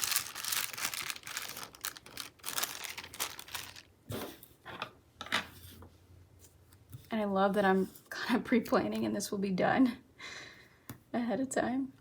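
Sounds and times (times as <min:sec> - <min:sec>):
paper sheets rustling: 0:00.0 - 0:03.9.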